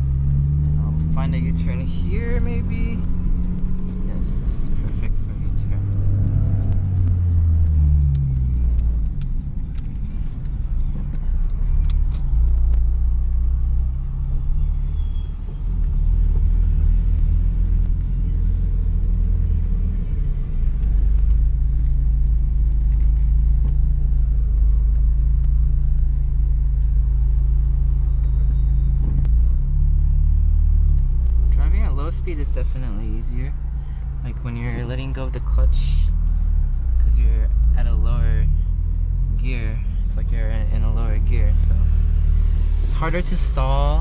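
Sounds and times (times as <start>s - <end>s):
car engine drone in cabin: 0.0s - 44.0s
road noise: 0.0s - 44.0s.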